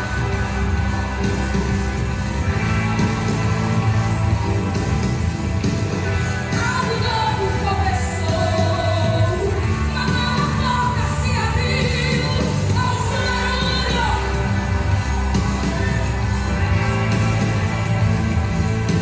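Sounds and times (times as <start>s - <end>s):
band playing: 0.0s - 19.0s
person singing: 6.4s - 16.4s.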